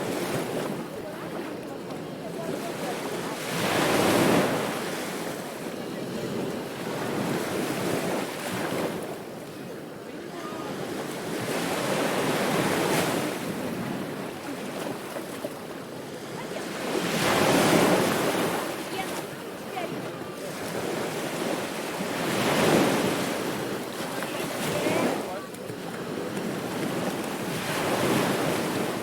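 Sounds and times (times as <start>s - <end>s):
ocean waves breaking on beach: 0.0s - 29.0s.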